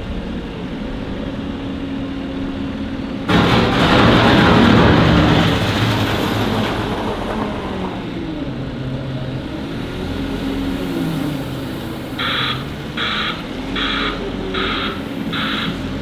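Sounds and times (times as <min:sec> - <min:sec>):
loading shovel diesel engine: 0:03.3 - 0:16.0
reversing alarm beeping: 0:12.2 - 0:16.0.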